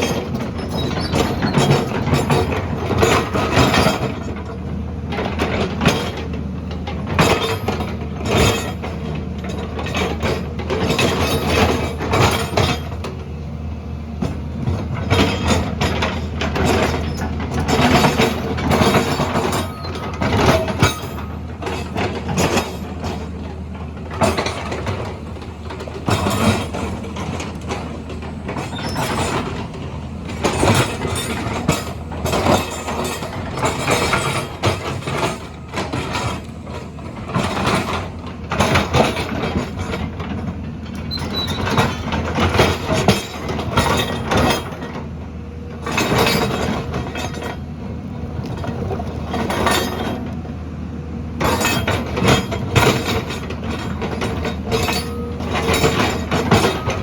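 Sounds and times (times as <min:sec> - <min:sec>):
heavy machine engine drone: 0:00.0 - 0:57.0
metallic clanks and rattles: 0:14.2 - 0:45.2, 0:45.8 - 0:47.7, 0:48.4 - 0:50.4, 0:51.4 - 0:57.0.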